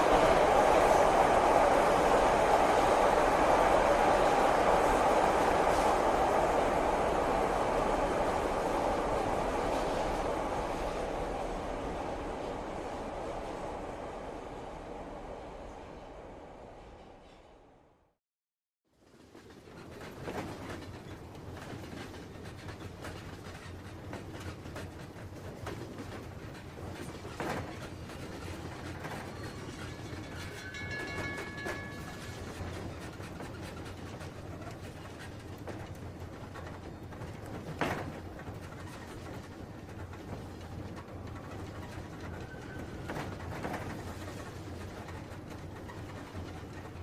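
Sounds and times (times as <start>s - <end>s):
train rumbling on track: 0.0s - 18.2s, 18.9s - 47.0s
wheels clicking on rails: 19.0s - 47.0s.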